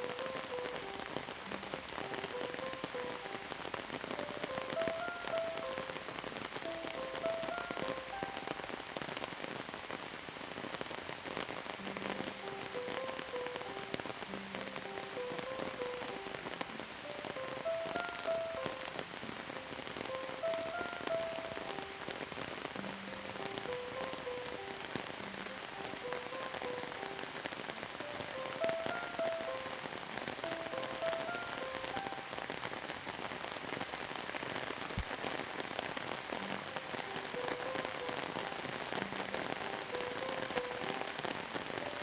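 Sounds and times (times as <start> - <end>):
soft slow melody: 0.0 - 9.8, 10.6 - 33.5, 35.7 - 42.0
rain drops pattering: 0.0 - 42.0.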